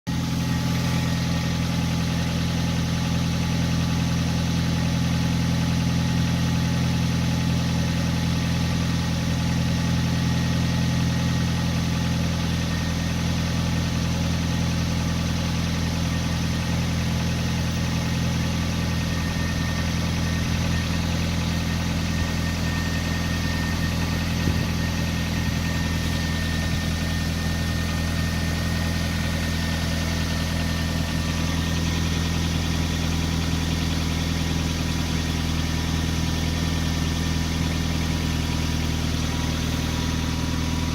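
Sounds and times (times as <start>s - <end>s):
car engine idling: 0.1s - 40.9s
high whistle: 18.9s - 29.8s.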